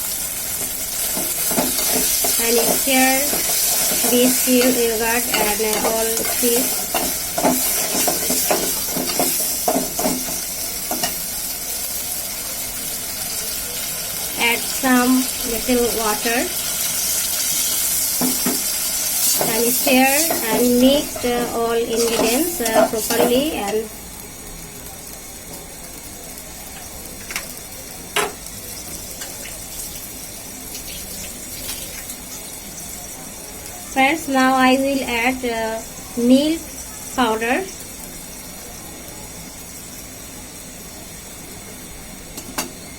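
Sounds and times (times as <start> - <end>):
steady sizzle: 0.0 - 42.9
spoon scraping a frying pan: 0.6 - 11.2, 17.7 - 23.5.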